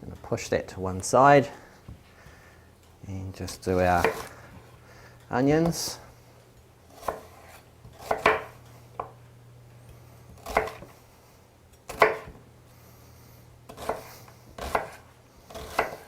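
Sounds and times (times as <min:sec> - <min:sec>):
knife chopping onion on board: 0:03.5 - 0:04.3, 0:07.0 - 0:09.2, 0:10.4 - 0:11.0, 0:11.9 - 0:12.4, 0:13.7 - 0:16.0.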